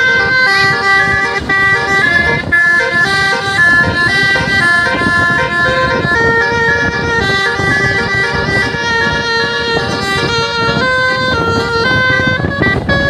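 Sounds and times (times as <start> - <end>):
bus horn playing melody: 0.0 - 13.0
low rumble: 0.0 - 13.0.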